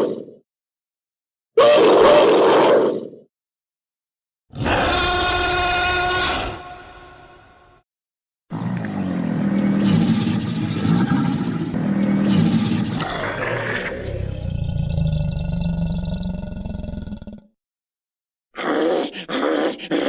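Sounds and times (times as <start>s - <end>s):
creature growling roar: 1.6s - 2.9s, 4.5s - 6.6s, 12.8s - 17.5s.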